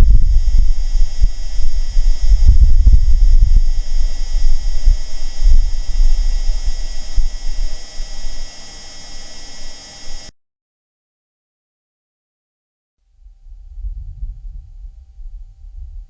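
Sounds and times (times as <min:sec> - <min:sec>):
gusty wind low rumble: 0:00.0 - 0:08.5, 0:13.2 - 0:16.0.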